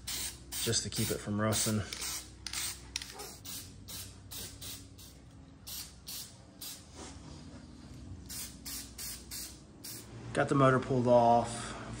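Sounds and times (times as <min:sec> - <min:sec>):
spray paint can hissing: 0:00.0 - 0:06.8, 0:08.3 - 0:10.1.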